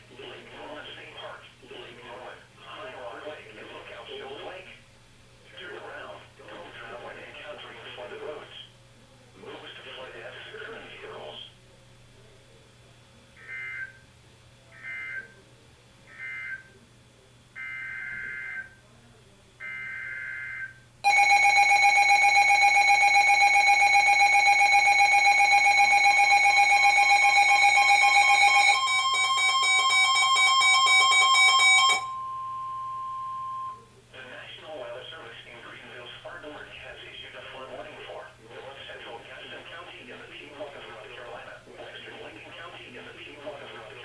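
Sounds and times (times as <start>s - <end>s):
rapid pulsing beep: 21.1s - 33.8s.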